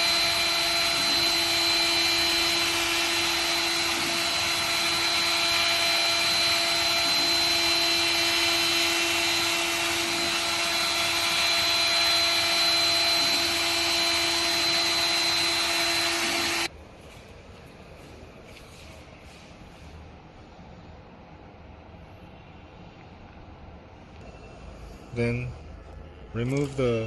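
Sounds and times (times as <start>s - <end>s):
electric motor whirring: 0.0s - 16.7s.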